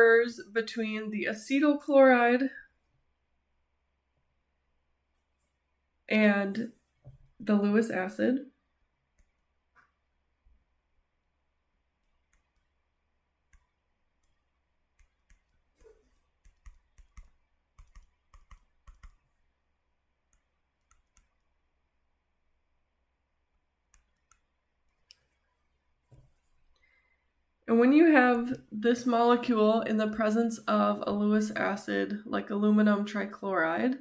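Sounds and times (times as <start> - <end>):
faint clicks and taps: 9.1 - 10.6, 12.0 - 12.8, 13.5 - 19.4, 20.2 - 21.5, 23.8 - 25.4.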